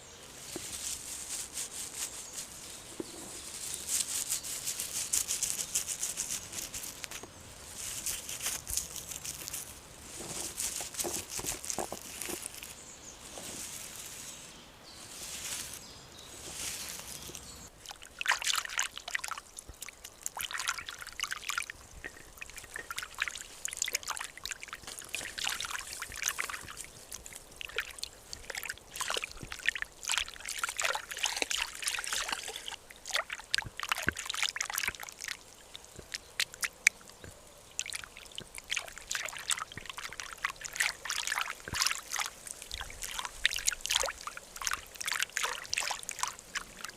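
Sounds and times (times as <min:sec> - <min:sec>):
water trickling and sloshing: 0:16.4 - 0:46.9.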